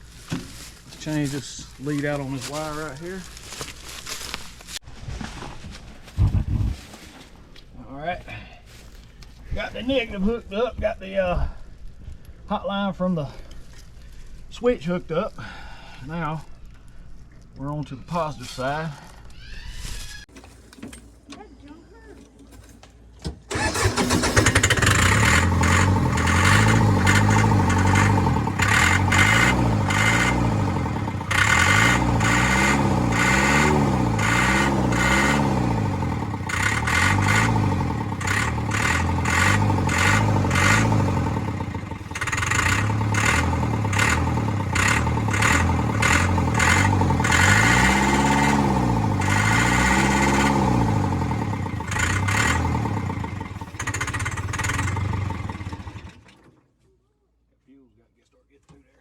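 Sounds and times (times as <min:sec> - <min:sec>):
large engine revving: 0:23.5 - 0:56.3.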